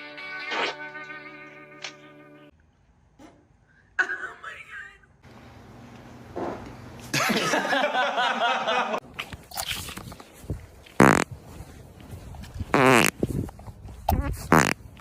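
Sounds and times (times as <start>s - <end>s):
human farts: 11.0s - 11.3s, 12.7s - 13.2s, 14.1s - 14.8s.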